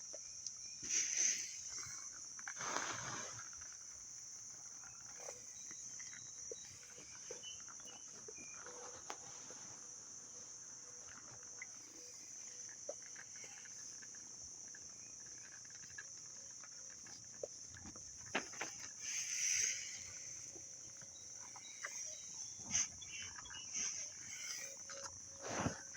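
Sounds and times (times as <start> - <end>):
steady high hiss: 0.0 - 25.9.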